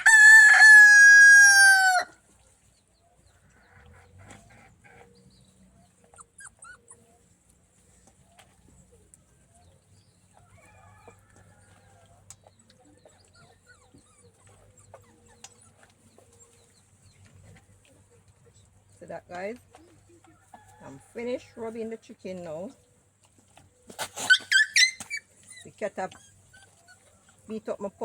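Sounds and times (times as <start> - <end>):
chickens clucking: 2.2 - 28.0
puppy yelping and whimpering: 6.0 - 7.2, 13.2 - 16.5, 24.2 - 27.4.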